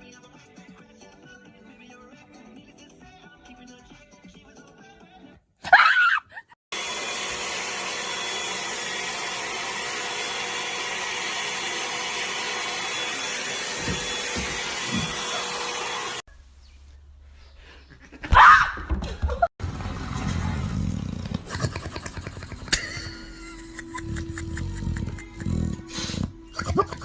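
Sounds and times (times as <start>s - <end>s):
electric appliance motor whirring: 6.7s - 16.3s, 19.6s - 26.5s.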